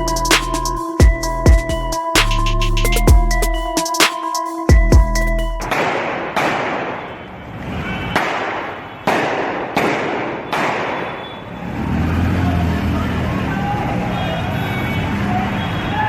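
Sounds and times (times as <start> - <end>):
gunshots with echoing tail: 5.7 - 7.3, 8.1 - 11.2
low rumble of street traffic: 6.4 - 16.0.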